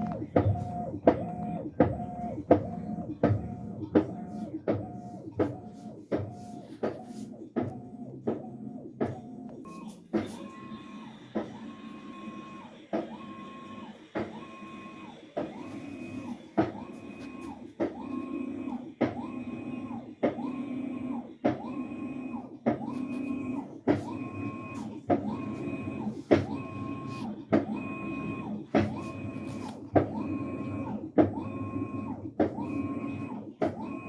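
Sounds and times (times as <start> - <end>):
washing machine knocking: 0.0 - 9.2, 16.5 - 17.0, 23.8 - 29.1, 29.9 - 31.4
washing machine motor whine: 0.0 - 34.0.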